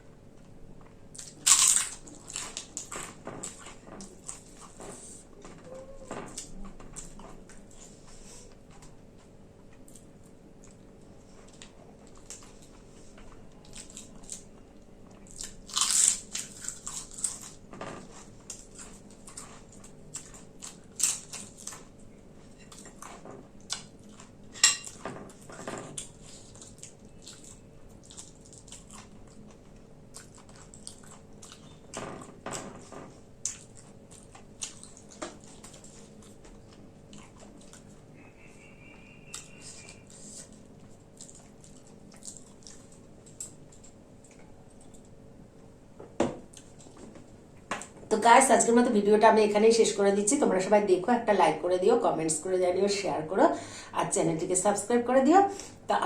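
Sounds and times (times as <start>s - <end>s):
quiet chewing: 0.3s - 48.0s
crisp snack crunching: 1.2s - 3.0s, 15.2s - 17.6s.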